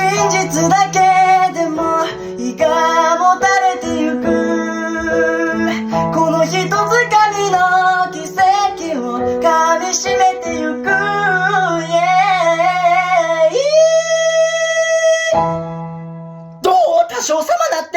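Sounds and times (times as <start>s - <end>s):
person singing with vibrato: 0.0s - 15.6s.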